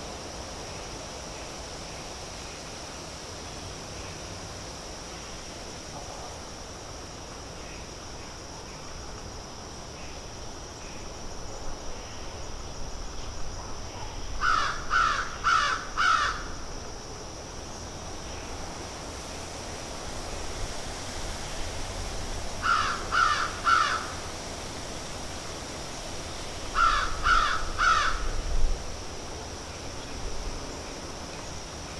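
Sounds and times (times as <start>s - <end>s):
outdoor hiss: 0.0s - 31.9s
crow cawing: 14.4s - 16.5s, 22.6s - 24.2s, 26.7s - 28.4s.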